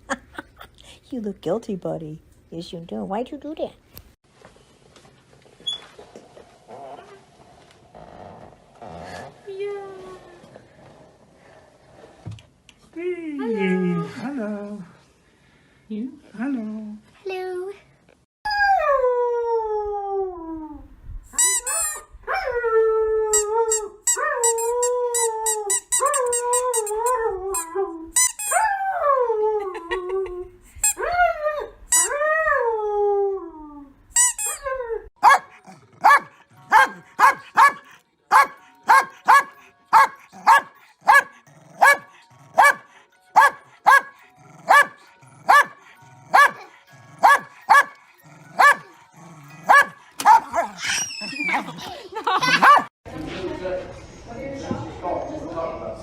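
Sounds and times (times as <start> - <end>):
dog barking: 35.2 - 48.0, 48.6 - 48.9, 49.6 - 50.9, 52.5 - 52.9.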